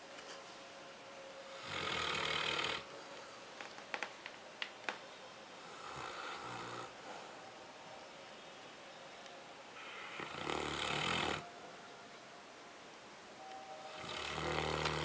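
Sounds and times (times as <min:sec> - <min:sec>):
dog snoring: 0:01.5 - 0:02.9, 0:05.6 - 0:07.0, 0:10.0 - 0:11.5, 0:13.9 - 0:15.0.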